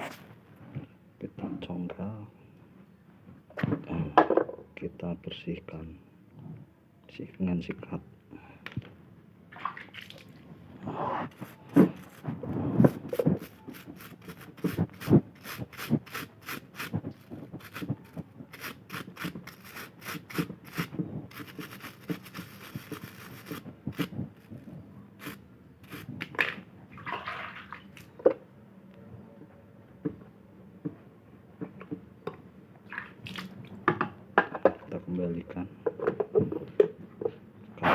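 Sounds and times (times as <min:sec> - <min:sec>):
brush scrubbing plastic valve: 0:11.2 - 0:26.2.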